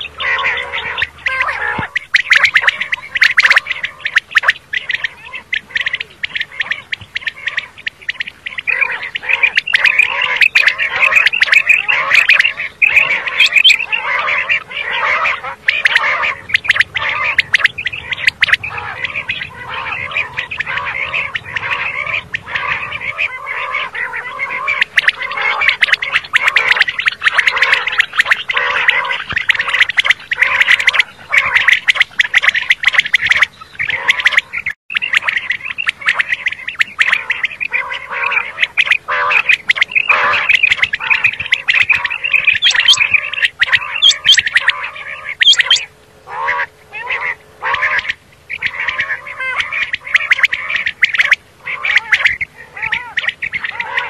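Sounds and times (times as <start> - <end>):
quail calling: 0.0 - 54.0.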